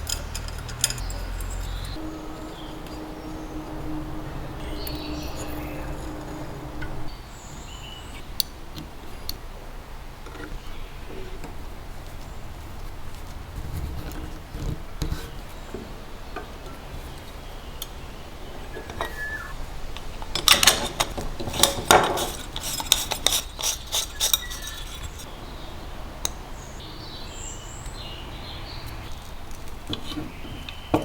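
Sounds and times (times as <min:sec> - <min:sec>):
small metal parts clinking: 0:00.0 - 0:02.0, 0:20.4 - 0:25.3.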